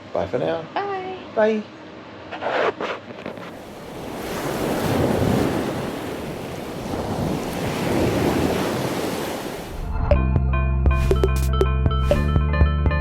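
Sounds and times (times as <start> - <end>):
sea waves washing ashore: 3.3 - 10.0
wind buffeting microphone: 3.6 - 10.1
music: 9.9 - 13.0.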